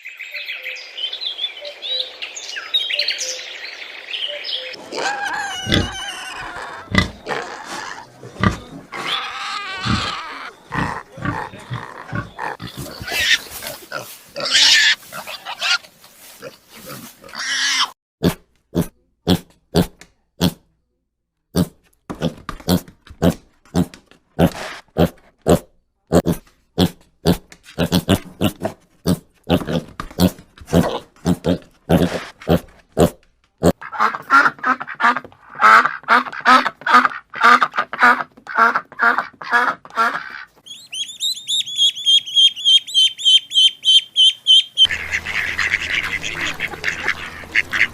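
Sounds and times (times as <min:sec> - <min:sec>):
pig grunting: 0:04.8 - 0:15.8, 0:21.5 - 0:33.8
high-pitched rapid bird calls: 0:40.6 - 0:47.9
rhythmic animal calls: 0:40.6 - 0:47.9.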